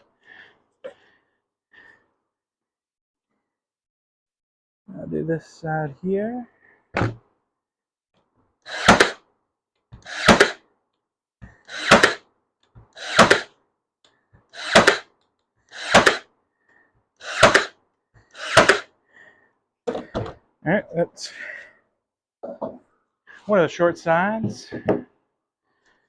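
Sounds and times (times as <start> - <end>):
nail gun firing: 8.7 - 9.2, 10.0 - 10.6, 11.7 - 12.2, 13.0 - 13.6, 14.6 - 15.1, 15.7 - 16.3, 17.2 - 17.8, 18.4 - 18.9.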